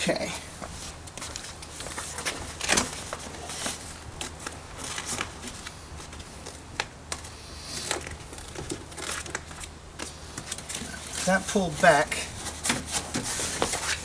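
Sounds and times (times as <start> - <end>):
plastic sheet crinkling and snapping: 1.3 - 11.3.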